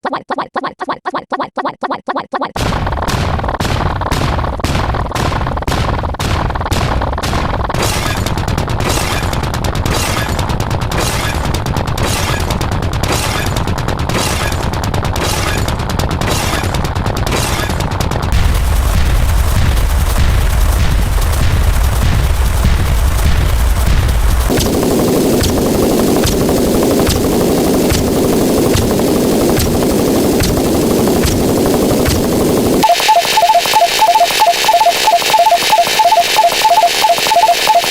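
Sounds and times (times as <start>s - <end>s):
gunfire-like bangs and booms: 18.3s - 32.8s
heavy low rumble: 18.4s - 32.8s.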